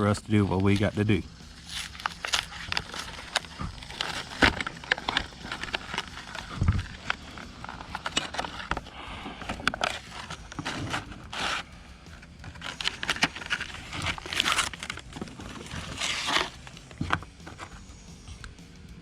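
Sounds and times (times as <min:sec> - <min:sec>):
plastic packaging crinkling and tearing: 0:01.5 - 0:17.8.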